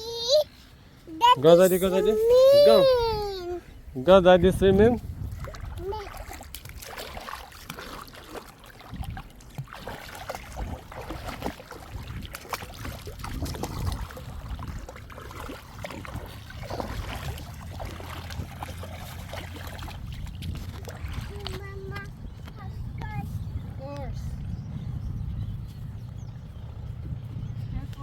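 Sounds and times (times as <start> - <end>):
wind rumbling on microphone: 1.6 - 7.8, 8.5 - 28.0
water splashing and lapping: 5.0 - 25.0.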